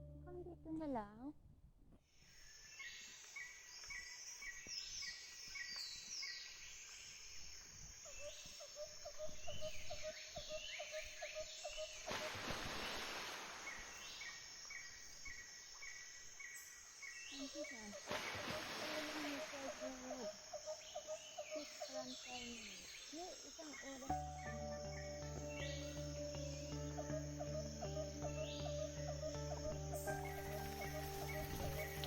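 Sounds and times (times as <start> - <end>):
low pulsing bird call: 24.1 - 32.0.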